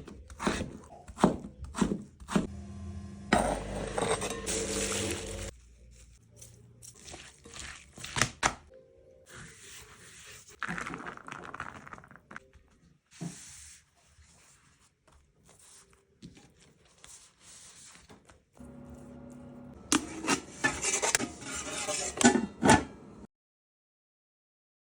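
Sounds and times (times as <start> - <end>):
soft rubbing and scraping: 9.3 - 10.6, 20.0 - 22.4
dishes knocking and scraping: 19.9 - 23.0.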